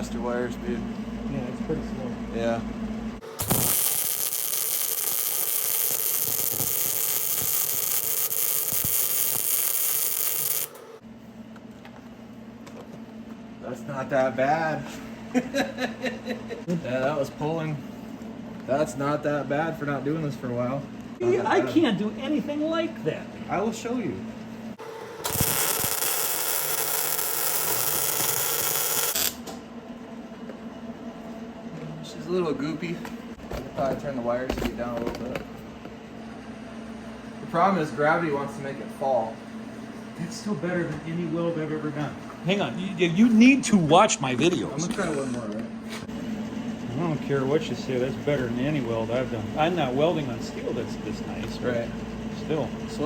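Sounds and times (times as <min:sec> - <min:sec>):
welding arc crackling hiss: 0:03.2 - 0:11.0, 0:24.8 - 0:29.6.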